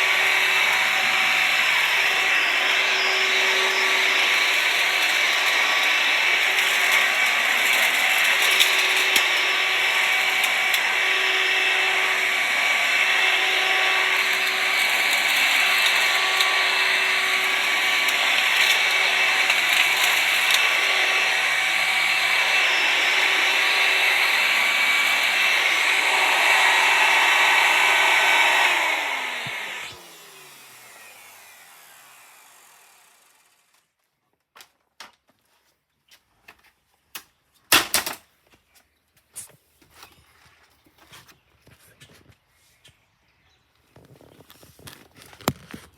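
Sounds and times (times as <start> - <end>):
vacuum cleaner running: 0.0 - 33.5
motor winding down whine: 0.0 - 33.6.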